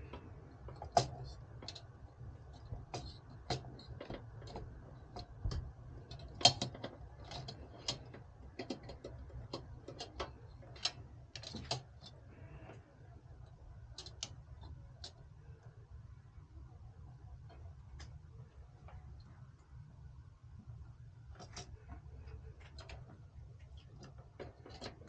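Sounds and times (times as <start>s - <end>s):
low steady hum: 0.0s - 25.0s
small hardware clicking and tapping: 2.5s - 12.2s, 13.9s - 15.8s.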